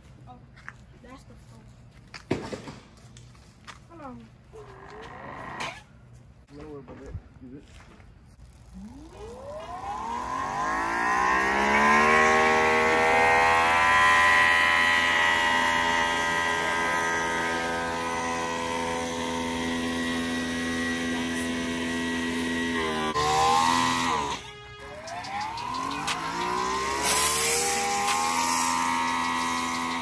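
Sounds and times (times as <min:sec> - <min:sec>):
pressure washer motor whining: 0:08.4 - 0:30.0.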